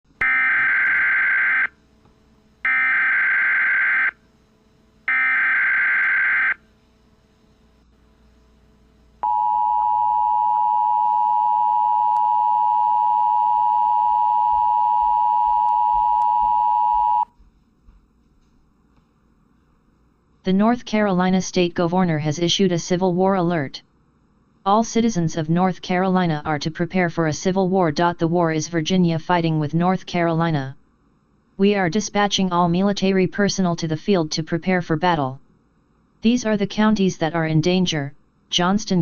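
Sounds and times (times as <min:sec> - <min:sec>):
two-tone attention signal: 0:09.2 - 0:17.3.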